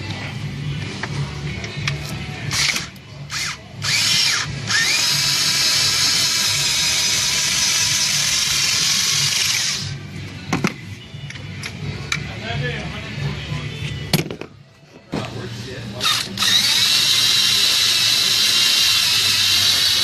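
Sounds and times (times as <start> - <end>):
cordless drill motor: 2.5 - 9.9, 16.0 - 20.0.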